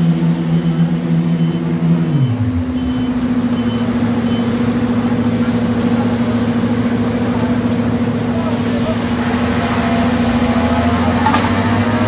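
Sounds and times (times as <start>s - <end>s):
reversing alarm beeping: 0.0s - 4.8s
heavy machine engine running: 0.0s - 12.0s.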